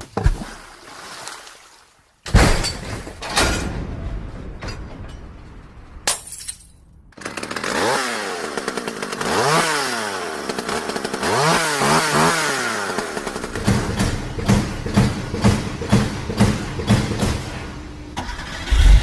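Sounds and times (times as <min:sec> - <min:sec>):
small engine revving: 0:07.2 - 0:14.1.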